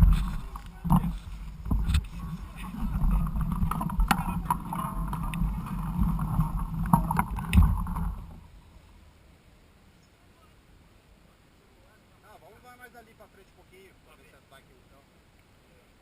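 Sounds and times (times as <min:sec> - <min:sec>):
bike knocks and rattles: 0:00.0 - 0:08.4
wind rumble on camera: 0:00.0 - 0:08.5
faint hiss: 0:00.0 - 0:16.0.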